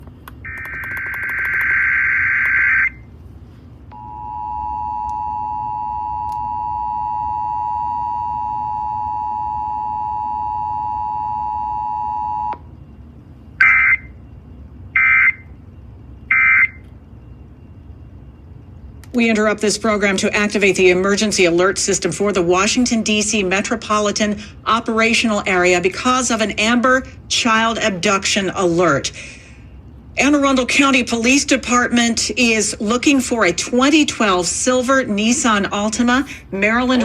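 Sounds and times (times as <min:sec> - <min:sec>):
two-tone attention signal: 0:03.9 - 0:12.6.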